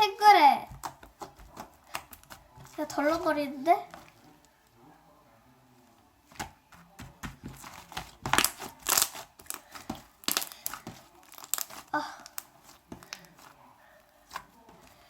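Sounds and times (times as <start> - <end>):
slime crackling and popping: 0.7 - 4.2, 7.2 - 13.6.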